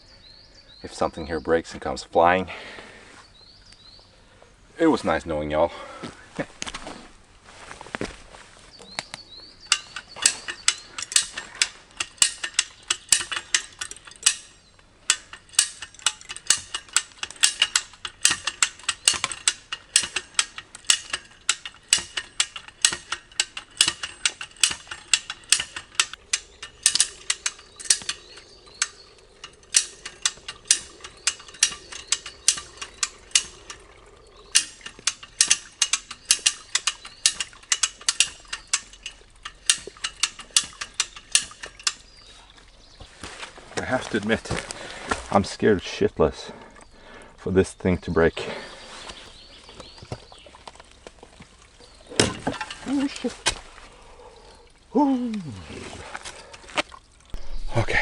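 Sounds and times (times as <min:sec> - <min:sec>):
hand ratchet clicking: 0:09.7 - 0:33.8, 0:34.5 - 0:42.0.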